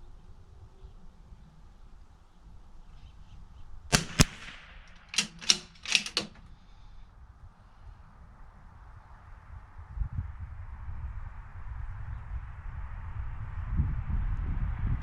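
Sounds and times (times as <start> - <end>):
rifle bolt clicking: 3.9 - 6.5
rifle shots cracking: 3.9 - 6.5.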